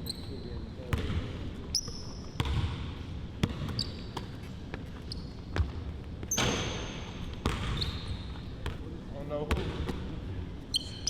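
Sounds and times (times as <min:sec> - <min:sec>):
sneakers squeaking on floor: 0:00.0 - 0:02.8, 0:03.4 - 0:11.0
basketball bouncing: 0:00.9 - 0:01.3, 0:02.4 - 0:02.8, 0:03.4 - 0:04.4, 0:05.5 - 0:08.0, 0:09.4 - 0:10.1.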